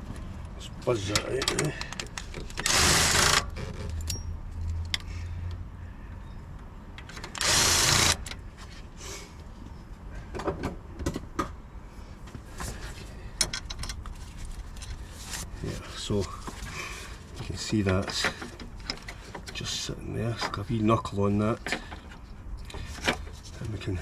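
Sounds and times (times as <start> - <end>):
cordless power tool spinning bolts: 2.5 - 3.7, 7.2 - 8.4.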